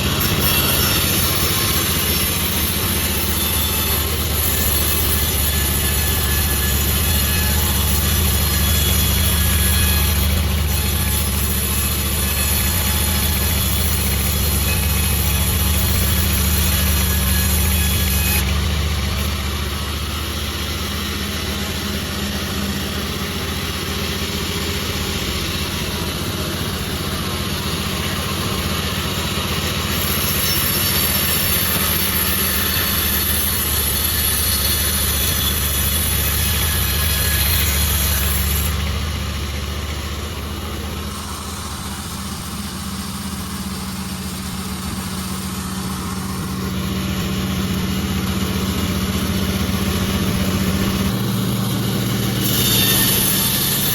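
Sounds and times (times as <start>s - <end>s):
saw cutting wood hiss: 0.0s - 53.9s
sawmill engine running: 0.0s - 53.9s.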